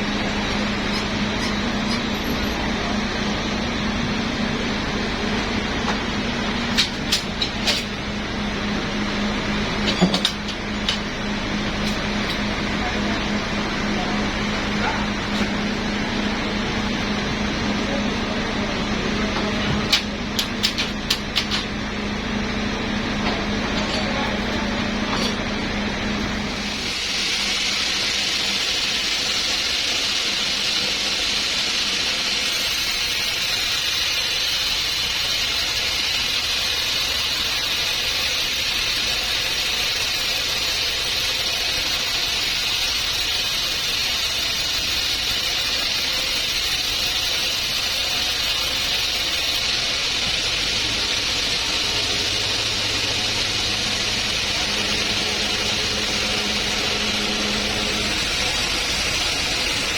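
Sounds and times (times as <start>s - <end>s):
machine hum: 0.0s - 59.9s
saw cutting through log: 26.9s - 59.9s.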